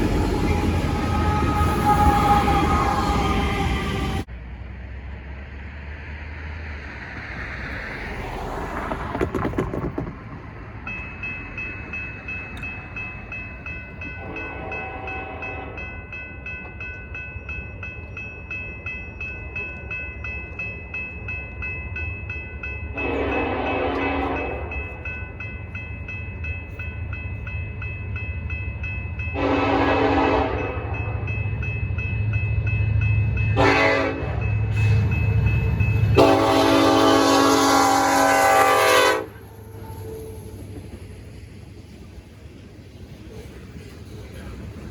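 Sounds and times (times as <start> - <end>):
locomotive horn blasts: 0.0 - 4.2, 14.2 - 15.9, 22.9 - 24.7, 29.3 - 31.0, 33.6 - 35.0, 36.1 - 40.4
crossing bells ringing: 0.0 - 4.3, 10.4 - 42.0
train rumble: 0.0 - 44.9.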